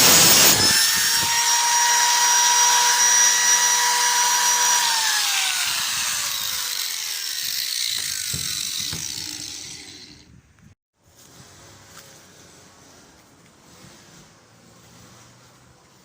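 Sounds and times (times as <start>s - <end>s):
power tool motor spinning down: 0.0s - 10.3s.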